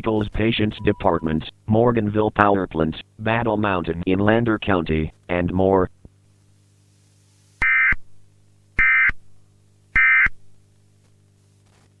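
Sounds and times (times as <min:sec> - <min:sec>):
faint low hum: 0:00.0 - 0:12.0
short buzzing data bursts: 0:07.6 - 0:08.0, 0:08.8 - 0:09.2, 0:09.9 - 0:10.4.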